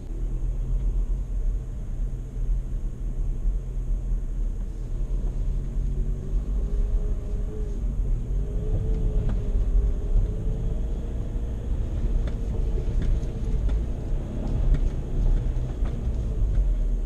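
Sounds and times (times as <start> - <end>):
heavy low rumble: 0.0 - 17.0.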